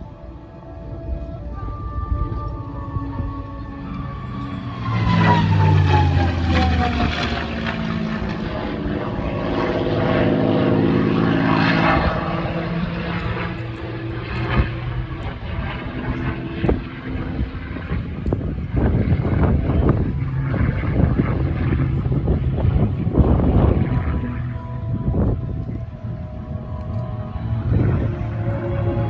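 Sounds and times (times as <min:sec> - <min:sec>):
propeller airplane passing low: 0:00.0 - 0:29.0
wind thumps on microphone: 0:16.5 - 0:27.0.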